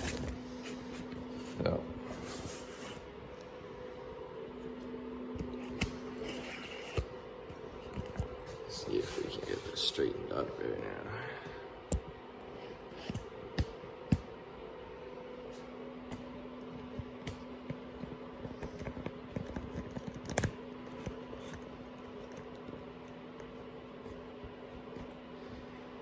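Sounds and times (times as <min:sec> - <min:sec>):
faint steady hum: 0:00.0 - 0:26.0
cables clicking and tapping: 0:16.0 - 0:25.6.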